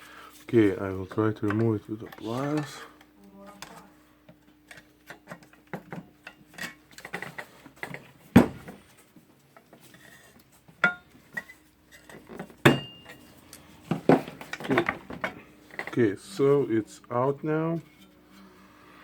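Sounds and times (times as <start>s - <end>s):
metallic ring: 12.6s - 13.4s.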